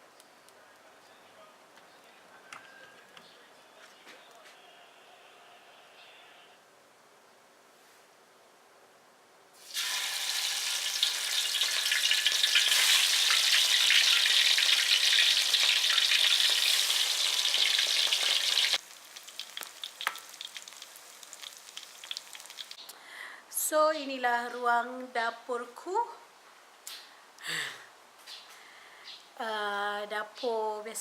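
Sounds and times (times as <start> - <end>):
food sizzling in hot oil: 9.6 - 22.8.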